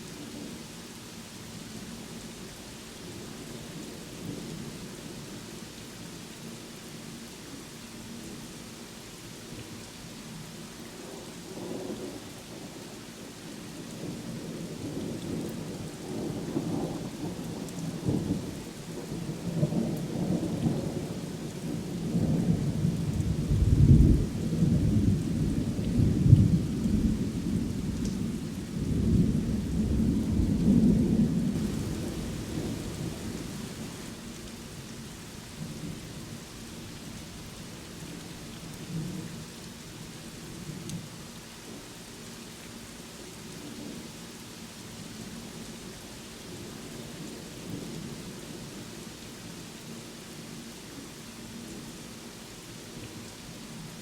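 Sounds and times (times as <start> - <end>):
steady rain: 0.0 - 54.0
thunder rumbling: 23.2 - 34.2.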